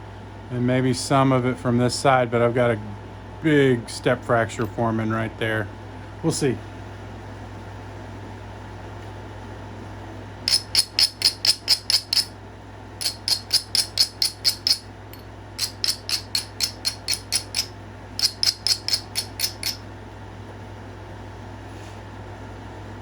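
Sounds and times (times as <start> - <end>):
knapping tool clicking on stone: 10.5 - 12.3, 13.0 - 19.8.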